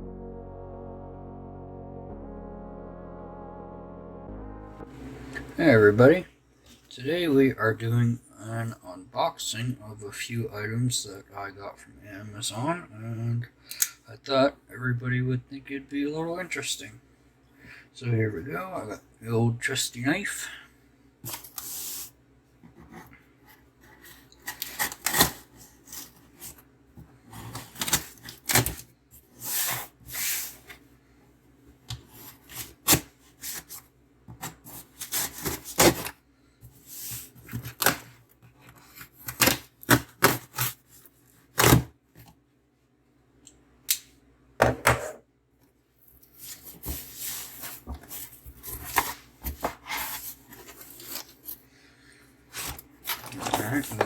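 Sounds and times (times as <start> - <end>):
knife cutting cardboard box: 24.4 - 26.2
cardboard tearing and rustling: 24.5 - 26.2, 34.8 - 36.1.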